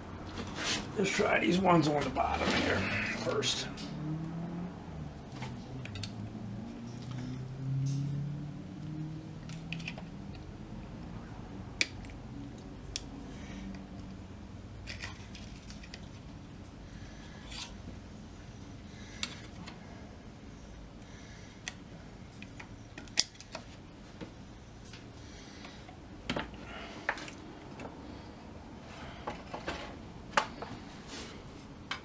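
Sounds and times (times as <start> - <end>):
small metallic clicks and taps: 5.4 - 6.2.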